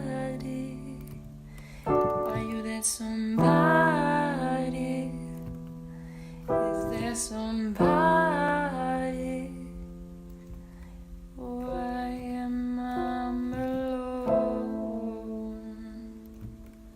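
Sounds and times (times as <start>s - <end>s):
piano playing slow chords: 0.0s - 16.9s
woman singing wordless note: 11.4s - 16.4s.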